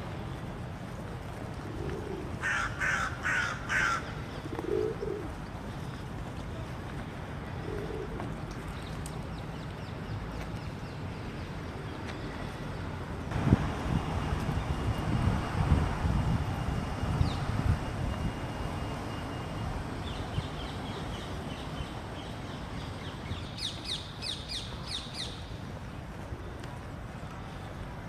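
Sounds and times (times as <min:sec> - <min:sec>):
pigeon cooing: 0:01.6 - 0:05.4, 0:07.6 - 0:08.3
crow cawing: 0:02.4 - 0:04.2.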